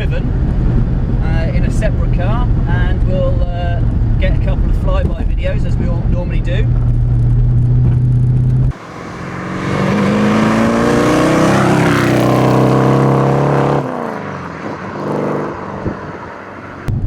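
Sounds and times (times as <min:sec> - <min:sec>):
car engine accelerating past: 0:08.6 - 0:16.9.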